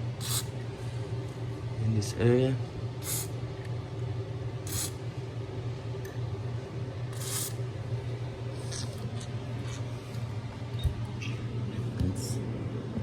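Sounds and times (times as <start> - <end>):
steady low hum: 0.0 - 13.0
aerosol can spraying: 0.2 - 0.5, 3.0 - 3.3, 4.7 - 5.0, 7.2 - 7.6.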